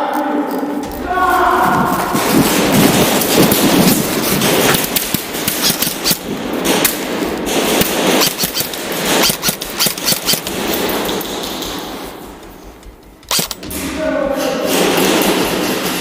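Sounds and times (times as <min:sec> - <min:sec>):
steady noise: 0:00.8 - 0:08.2
airsoft guns firing: 0:00.8 - 0:13.8.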